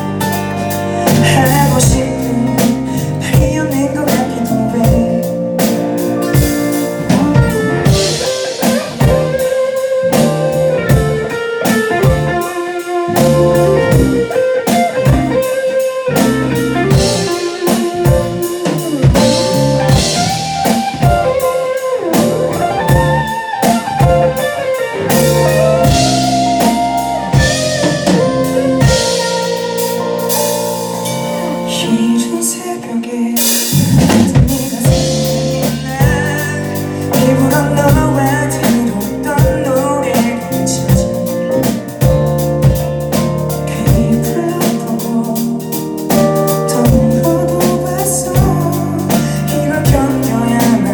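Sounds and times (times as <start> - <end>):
drum kit beat: 0.0 - 32.6, 33.4 - 50.9
guitar melody with bending notes: 0.0 - 33.1.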